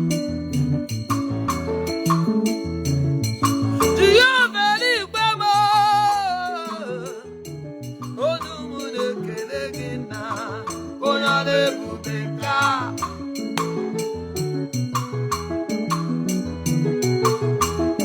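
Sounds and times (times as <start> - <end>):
bass: 0.0 - 18.0
person singing with vibrato: 3.7 - 7.3, 8.1 - 13.3.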